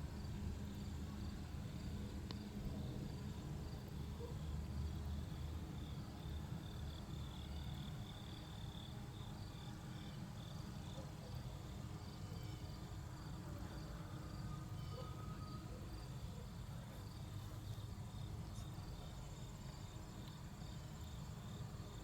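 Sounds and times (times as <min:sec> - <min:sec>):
crickets chirping: 0:00.0 - 0:22.0.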